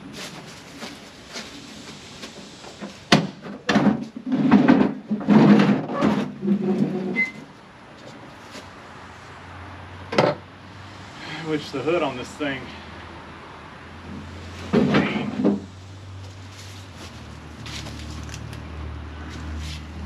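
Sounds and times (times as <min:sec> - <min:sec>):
sheet-metal hood clattering: 0:03.2 - 0:07.5.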